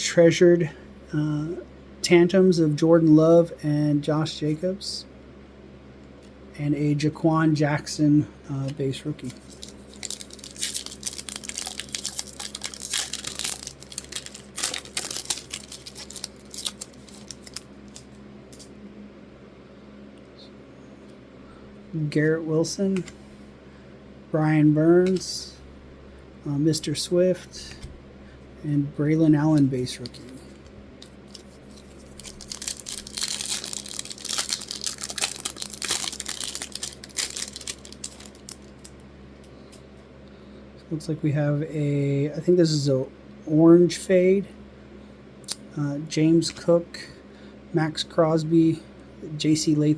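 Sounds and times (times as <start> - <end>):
foil wrapper tearing and crinkling: 9.2 - 18.1, 31.0 - 39.0.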